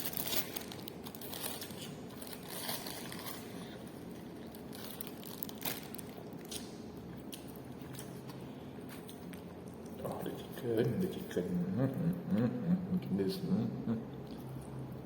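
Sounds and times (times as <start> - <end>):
person eating crunchily: 0.0 - 10.4.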